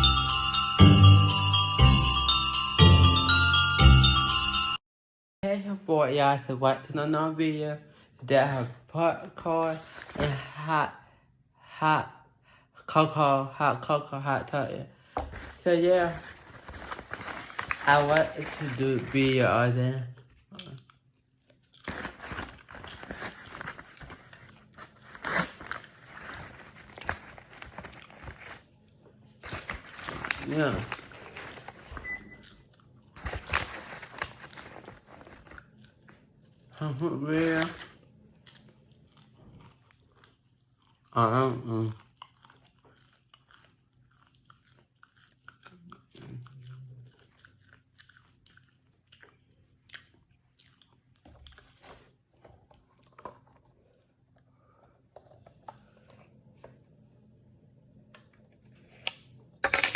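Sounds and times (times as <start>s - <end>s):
person chewing popcorn: 20.0s - 57.3s.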